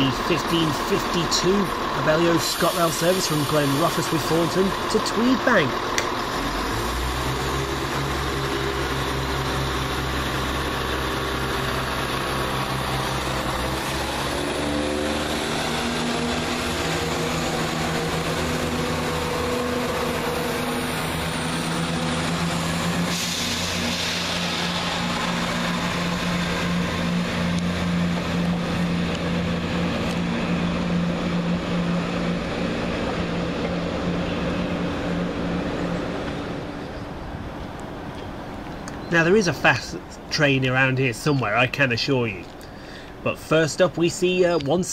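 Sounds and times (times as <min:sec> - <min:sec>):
train diesel engines running: 0:00.0 - 0:44.9.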